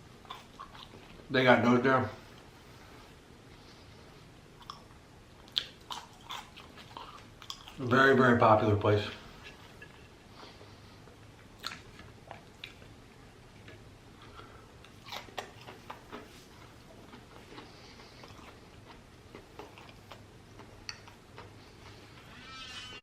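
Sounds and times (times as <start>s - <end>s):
chewing crunchy food: 0.1s - 1.3s, 4.6s - 8.0s, 9.3s - 13.0s, 13.6s - 22.0s.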